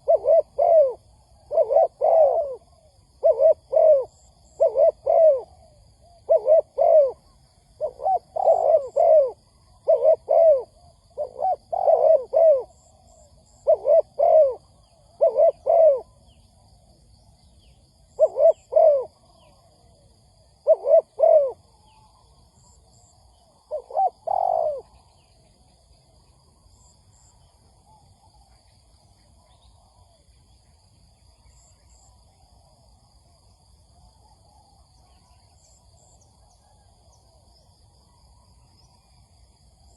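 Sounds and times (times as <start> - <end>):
dove cooing: 0.0 - 16.3, 18.1 - 25.2.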